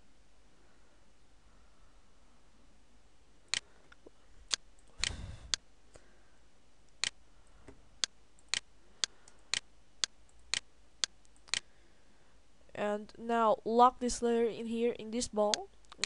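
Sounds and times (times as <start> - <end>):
computer mouse clicking: 8.0 - 11.7, 15.5 - 16.0.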